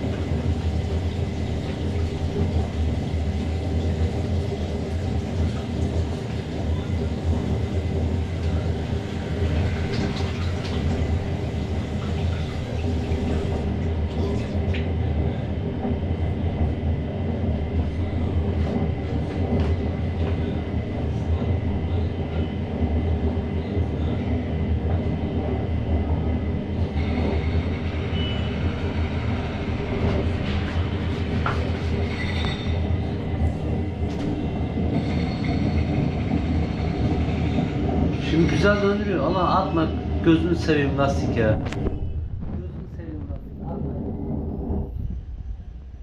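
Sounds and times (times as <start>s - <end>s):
washing machine running: 0.0s - 45.8s.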